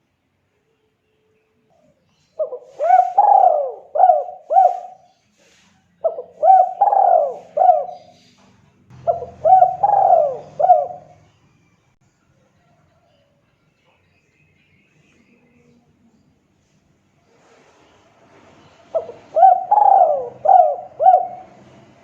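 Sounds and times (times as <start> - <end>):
dove cooing: 1.8 - 11.3, 18.8 - 22.0.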